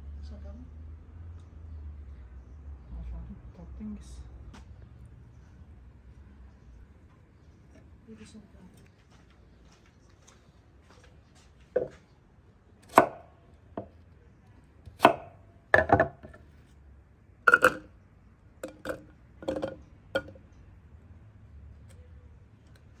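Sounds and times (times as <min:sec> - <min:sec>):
knife chopping on cutting board: 0:12.9 - 0:13.2, 0:15.0 - 0:16.1.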